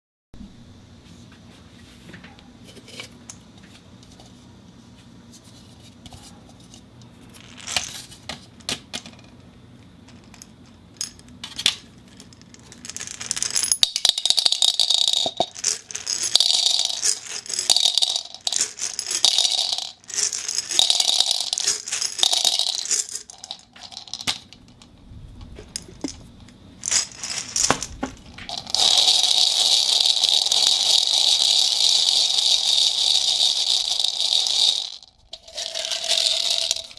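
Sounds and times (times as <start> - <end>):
ceramic ball rattling in plastic cup: 12.1 - 36.9.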